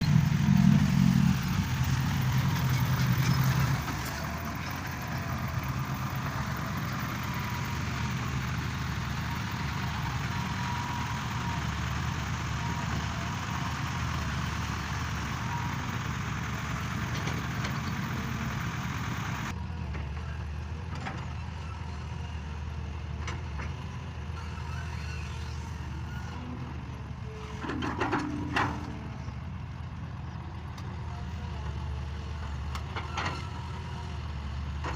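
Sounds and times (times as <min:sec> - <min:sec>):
excavator engine running: 0:00.0 - 0:34.9.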